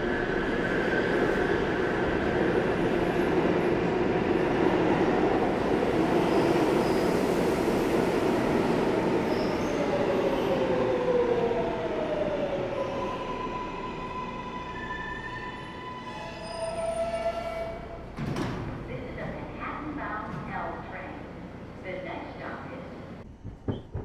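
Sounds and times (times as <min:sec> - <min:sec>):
train running on rails: 0:00.0 - 0:24.0
rail squealing: 0:12.8 - 0:18.2.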